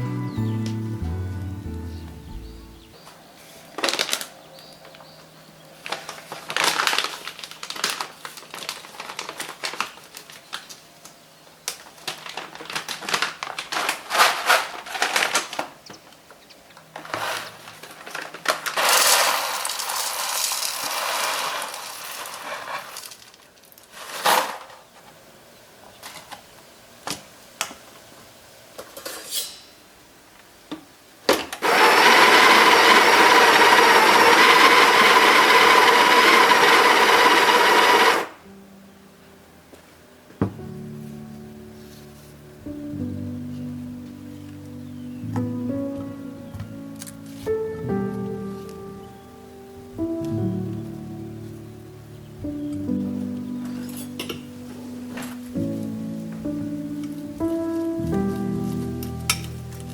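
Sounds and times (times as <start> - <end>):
kitchen appliance motor running: 31.6 - 38.3
utensils and dishes clattering: 53.9 - 54.4.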